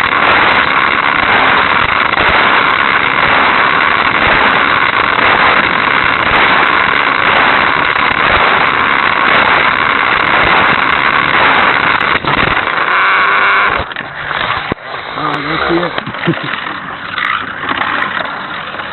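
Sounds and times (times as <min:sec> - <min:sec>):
toy car electric motor whirring: 0:00.0 - 0:14.8, 0:15.6 - 0:18.9.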